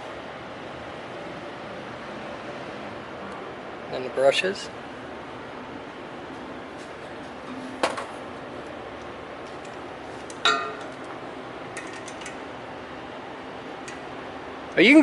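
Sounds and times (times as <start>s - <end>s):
shop background hum: 0.0s - 15.0s
sharp metallic clinks: 10.4s - 10.9s.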